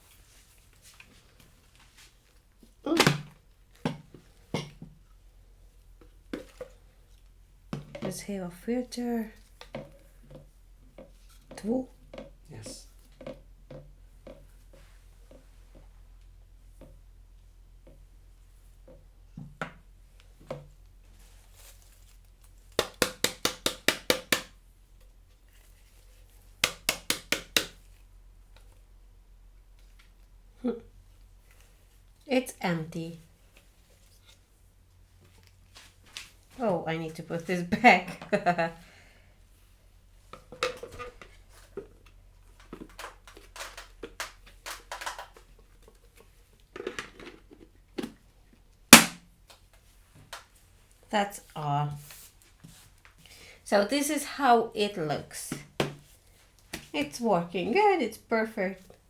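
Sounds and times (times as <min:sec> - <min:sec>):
plastic parts clicking and knocking: 0:40.4 - 0:48.2.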